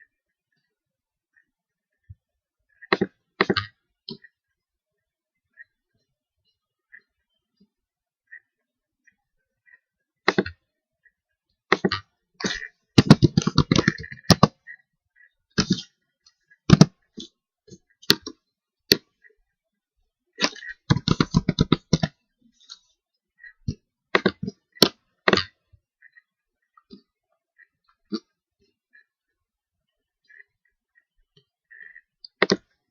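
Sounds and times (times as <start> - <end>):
keyboard typing: 11.7 - 14.8, 15.6 - 15.9, 16.6 - 17.3, 20.4 - 22.2, 32.3 - 32.8
mouse clicks: 11.7 - 14.8, 31.4 - 32.8.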